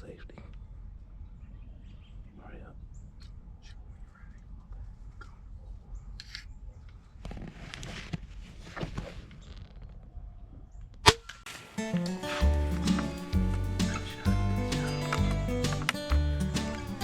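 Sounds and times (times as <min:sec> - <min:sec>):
soft rustling of movement: 0:06.9 - 0:10.0.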